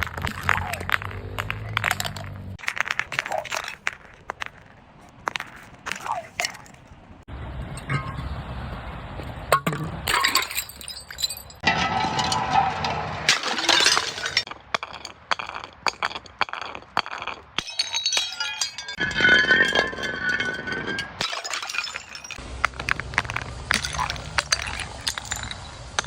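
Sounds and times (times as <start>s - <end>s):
glass bottles breaking: 0.0s - 4.4s, 9.5s - 26.0s
glass shards clinking: 9.5s - 26.0s.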